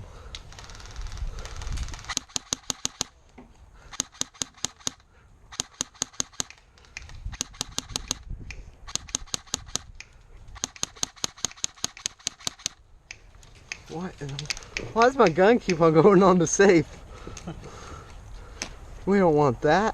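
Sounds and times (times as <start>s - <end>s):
airsoft gun full-auto bursts: 1.8s - 3.1s, 3.9s - 6.6s, 7.3s - 8.2s, 8.9s - 9.9s, 10.6s - 12.8s.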